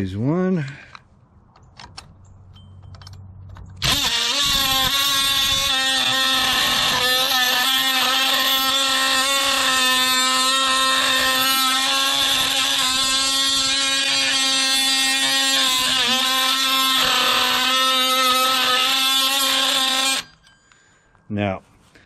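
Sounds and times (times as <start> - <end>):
oscillating multi-tool on steel bolt: 3.8 - 20.8.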